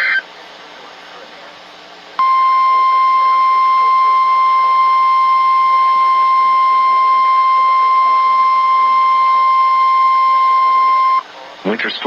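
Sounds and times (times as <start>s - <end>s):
radio hiss: 0.0s - 12.0s
steady warning alarm tone: 2.2s - 11.2s.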